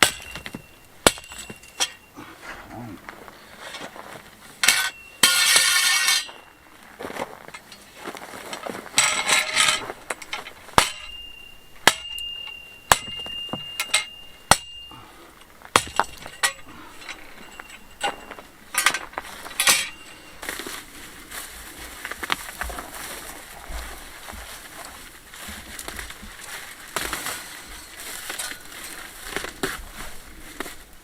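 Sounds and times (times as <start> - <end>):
metallic clinks and knocks: 0.0 - 2.2, 4.6 - 6.6, 8.5 - 20.6
scraping and rustling: 16.2 - 31.0.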